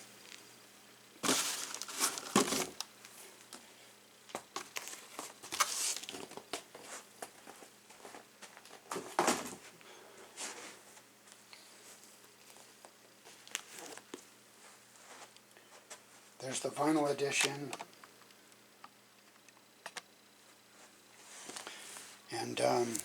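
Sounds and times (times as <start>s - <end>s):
packaging rustling and crinkling: 1.2s - 3.2s, 4.5s - 7.4s.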